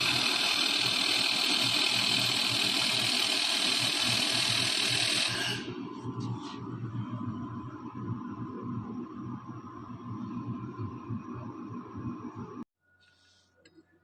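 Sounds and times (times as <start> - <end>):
machine low hum: 5.3 - 13.0.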